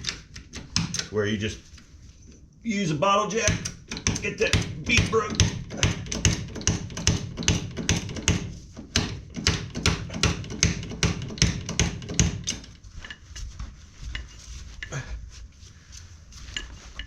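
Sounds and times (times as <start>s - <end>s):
bottle jack clicking and knocking: 3.5s - 12.8s.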